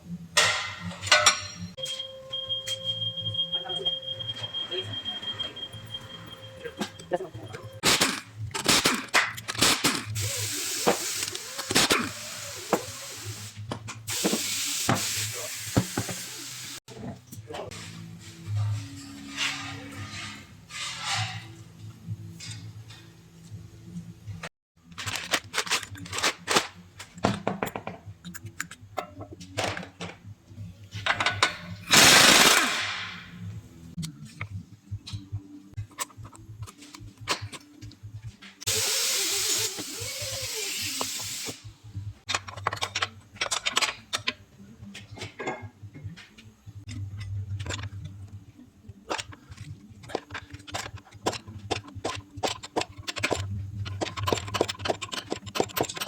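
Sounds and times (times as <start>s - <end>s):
loud power tool burst: 31.9s - 33.2s
metal clicks and knocks: 48.9s - 56.0s.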